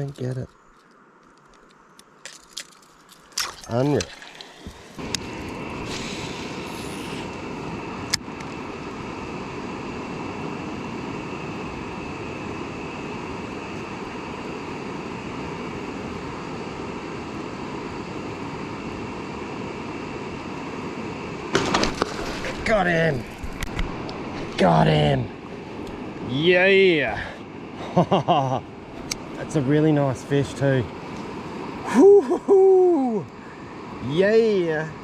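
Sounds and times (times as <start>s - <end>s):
steady rushing noise: 3.9s - 27.8s.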